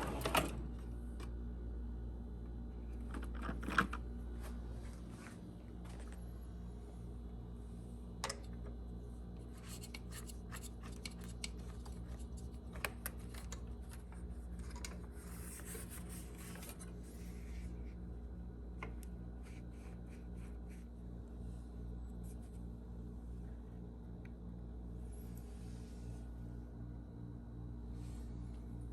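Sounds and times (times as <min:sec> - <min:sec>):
steady low hum: 0:00.0 - 0:28.9
clicks and scrapes on engine parts: 0:09.6 - 0:15.5.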